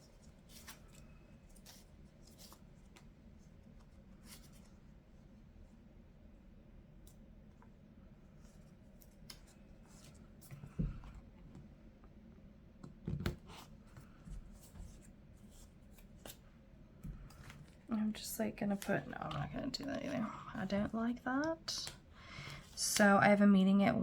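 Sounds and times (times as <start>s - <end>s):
paper and stickers rustling: 17.2s - 23.2s.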